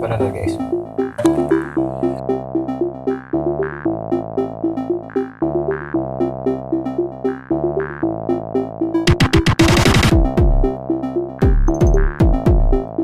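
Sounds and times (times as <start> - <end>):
held bass chords: 0.0 - 9.1, 10.1 - 13.0
repeating synthesizer figure: 1.2 - 2.2.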